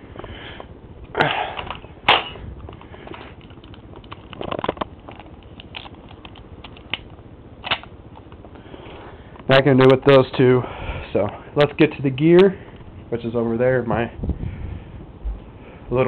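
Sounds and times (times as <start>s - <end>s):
gun handling clicks and rattles: 1.6s - 8.6s.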